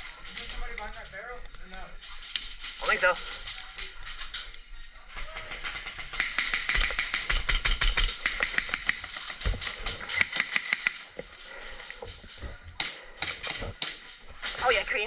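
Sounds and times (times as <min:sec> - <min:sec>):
airsoft guns firing in bursts: 0:05.2 - 0:11.2.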